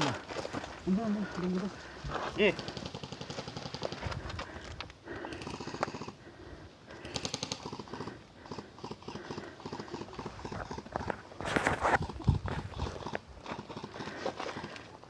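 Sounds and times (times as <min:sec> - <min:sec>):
footsteps: 0:11.0 - 0:12.9.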